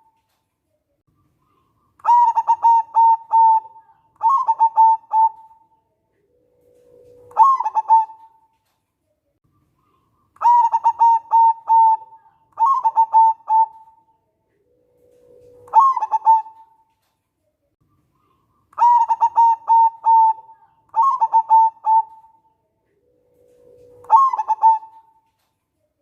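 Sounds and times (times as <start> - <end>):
dove cooing: 1.5 - 8.5, 9.9 - 16.8, 18.2 - 25.3.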